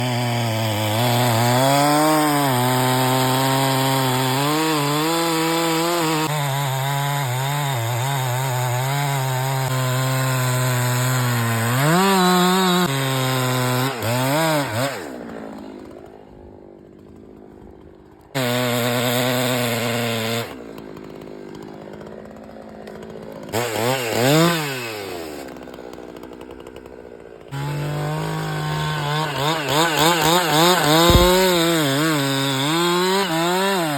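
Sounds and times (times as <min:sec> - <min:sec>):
chainsaw cutting wood: 0:00.0 - 0:33.9
chainsaw idling: 0:14.9 - 0:18.4, 0:20.4 - 0:24.0, 0:25.1 - 0:32.9.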